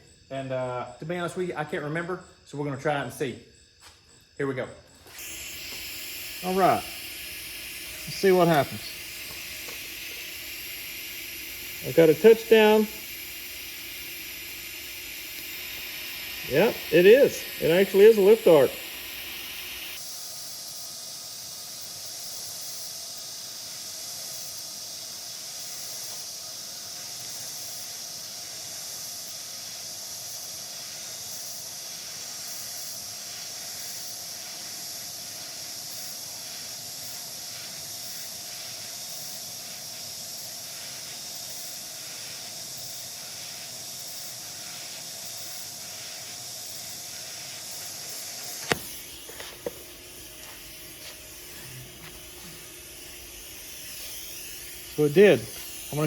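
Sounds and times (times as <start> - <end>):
welder click: 5.0 - 20.0, 47.7 - 56.0
welding arc hissing: 5.0 - 56.0.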